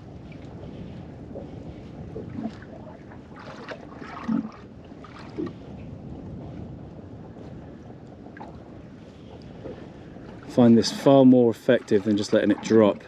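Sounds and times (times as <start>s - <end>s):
water lapping against hull: 0.0s - 13.0s
wind on microphone: 0.0s - 13.0s.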